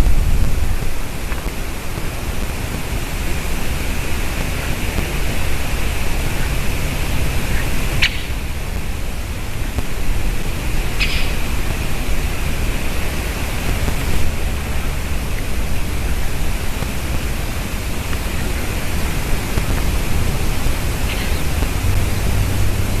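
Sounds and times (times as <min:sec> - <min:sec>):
low rumble: 0:00.0 - 0:07.6
outdoor background hiss: 0:00.0 - 0:23.0.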